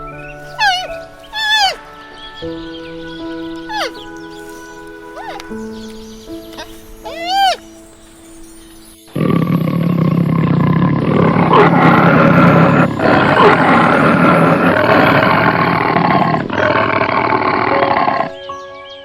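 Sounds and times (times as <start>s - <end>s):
large animal roaring: 9.2s - 18.4s.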